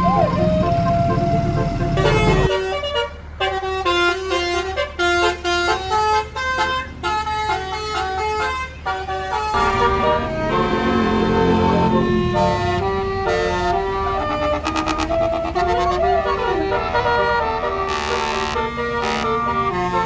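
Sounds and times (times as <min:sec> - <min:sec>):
bus musical horn playing tune: 0:00.0 - 0:20.0.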